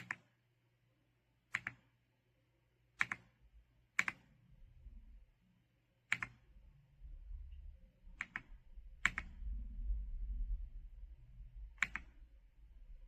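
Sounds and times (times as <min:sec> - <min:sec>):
faint low rumble: 0:04.4 - 0:13.0.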